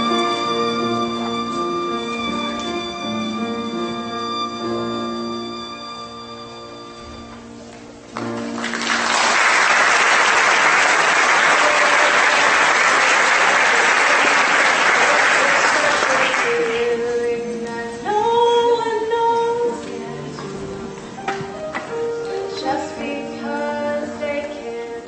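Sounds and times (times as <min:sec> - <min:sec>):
music with held melodic notes: 0:00.0 - 0:09.1, 0:16.5 - 0:25.0
music: 0:00.0 - 0:25.0
audience applauding: 0:08.2 - 0:17.0.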